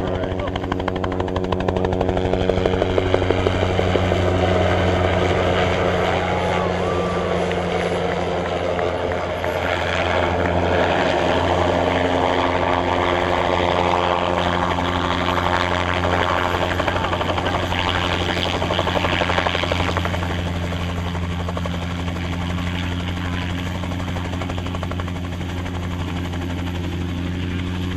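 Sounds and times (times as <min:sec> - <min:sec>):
helicopter rotor drone: 0:00.0 - 0:27.9.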